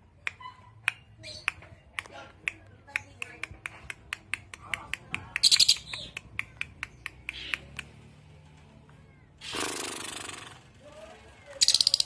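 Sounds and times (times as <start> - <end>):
lovebird clicking calls: 2.5 - 7.9, 11.6 - 12.0
harsh rasping bird call: 9.4 - 10.7.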